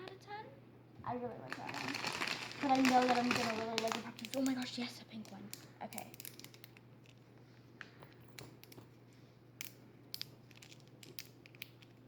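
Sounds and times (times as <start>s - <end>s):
plastic toys clicking: 1.5s - 6.8s.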